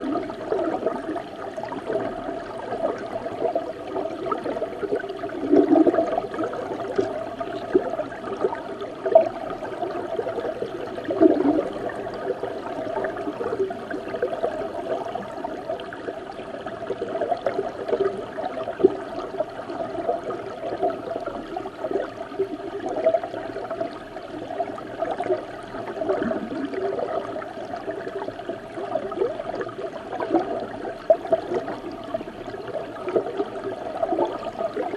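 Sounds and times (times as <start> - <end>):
underwater river rush: 0.0 - 34.9
water gurgling: 0.0 - 34.9.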